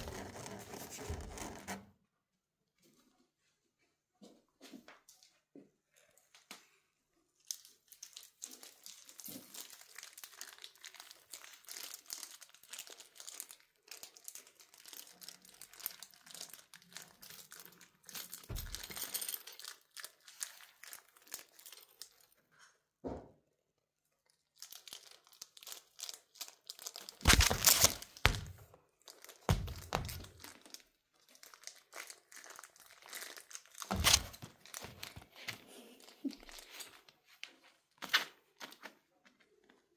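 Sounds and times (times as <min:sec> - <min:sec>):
crinkly material rustling: 0:07.4 - 0:22.6, 0:24.2 - 0:39.9.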